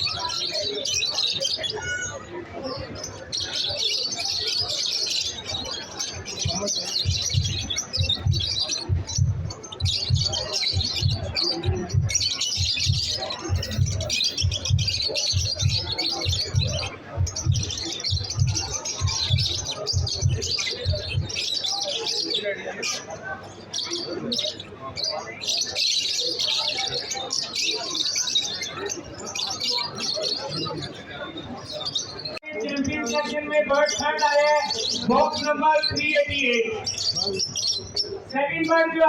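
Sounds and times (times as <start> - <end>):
lovebirds chirping: 0.0 - 22.4
low thumps: 6.4 - 21.4.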